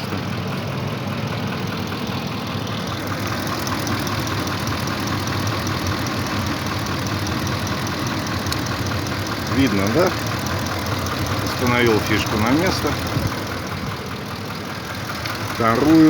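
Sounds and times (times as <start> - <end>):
engine idling: 0.0 - 16.0
rapid light ticking knock: 3.3 - 11.6.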